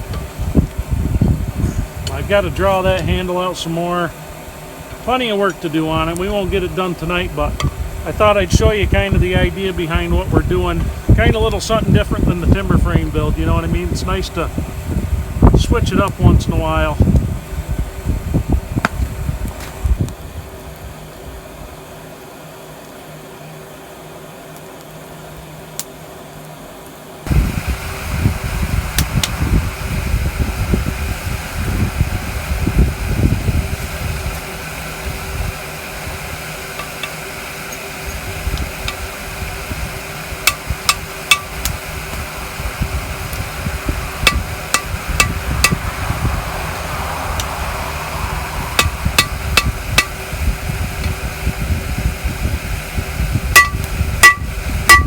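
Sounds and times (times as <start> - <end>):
wind buffeting microphone: 0.0 - 4.1, 4.9 - 20.8, 27.3 - 36.5, 38.1 - 55.0
heat gun blowing air: 27.3 - 55.0
hammer striking hot metal on anvil: 40.4 - 41.6, 44.2 - 45.8, 48.8 - 50.2, 53.5 - 55.0.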